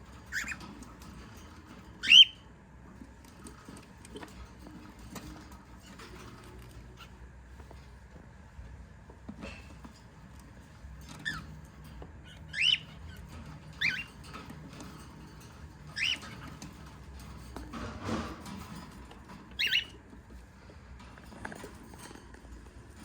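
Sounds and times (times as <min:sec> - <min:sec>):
cockatiel calls: 0:02.0 - 0:02.4, 0:12.2 - 0:13.2, 0:13.8 - 0:14.1, 0:15.9 - 0:16.3, 0:19.6 - 0:19.9.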